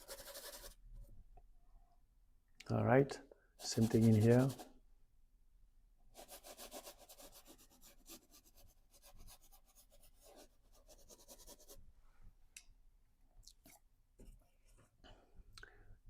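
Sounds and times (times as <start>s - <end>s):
paint brush rubbing on canvas: 0.0s - 0.8s, 3.6s - 4.7s, 6.2s - 11.8s.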